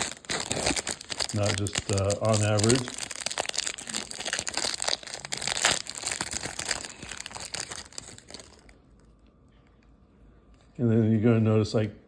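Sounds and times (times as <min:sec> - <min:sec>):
card pack wrappers crinkling: 0:00.0 - 0:08.8.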